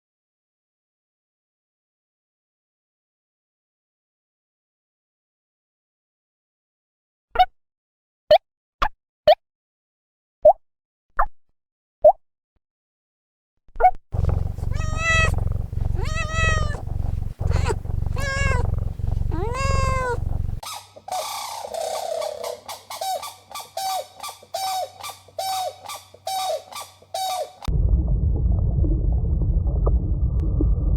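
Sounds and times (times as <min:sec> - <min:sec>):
low rumble: 0:14.2 - 0:20.6, 0:27.7 - 0:30.9
drawn-out animal calls: 0:14.2 - 0:27.7
short animal calls: 0:14.2 - 0:27.7.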